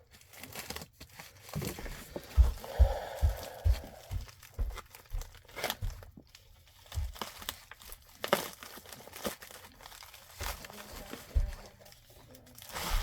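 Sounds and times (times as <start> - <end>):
packaging crinkling and rustling: 0.0 - 2.3, 4.2 - 13.0.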